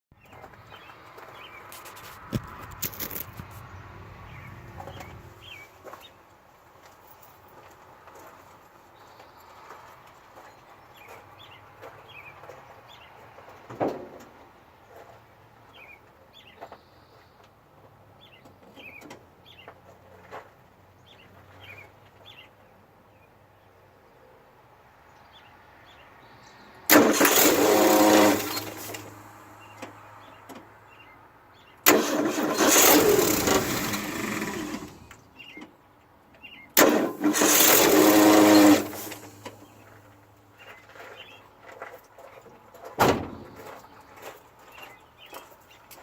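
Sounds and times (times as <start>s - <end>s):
engine starter cranking: 26.9s - 29.6s, 31.9s - 35.3s, 36.8s - 40.0s.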